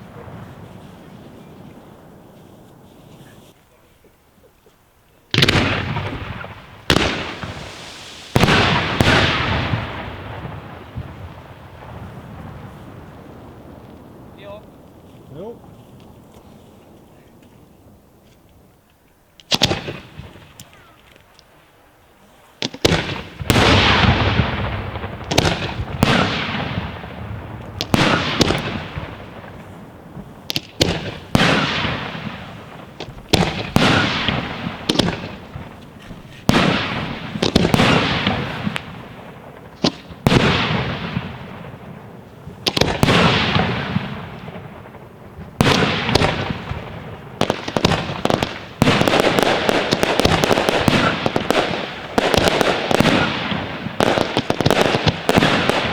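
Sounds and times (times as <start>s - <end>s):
firework crackling: 5.2s - 17.9s, 19.4s - 55.9s
firework shells bursting: 5.3s - 15.0s, 22.6s - 55.9s.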